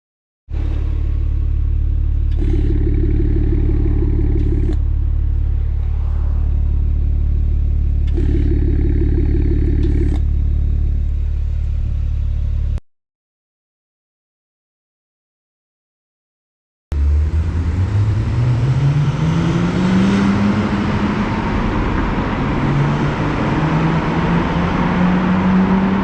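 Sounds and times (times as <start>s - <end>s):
car engine idling: 0.5s - 12.8s
deeper exhaust drone: 0.5s - 12.8s, 16.9s - 26.0s.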